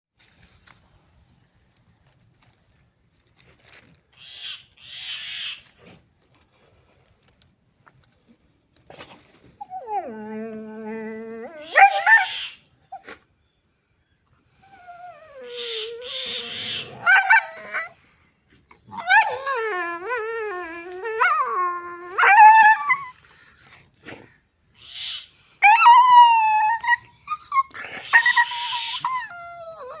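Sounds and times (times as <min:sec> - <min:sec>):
dog howling and whining: 0:09.5 - 0:13.0, 0:14.5 - 0:18.0, 0:18.7 - 0:23.2, 0:25.6 - 0:30.0.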